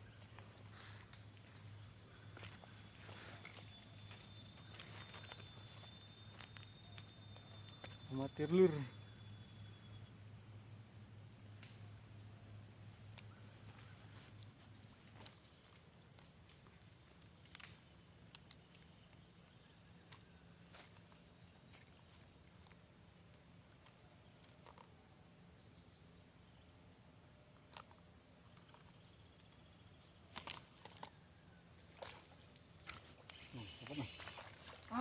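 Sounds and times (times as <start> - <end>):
high-pitched insect drone: 1.5 - 11.1, 32.0 - 35.0.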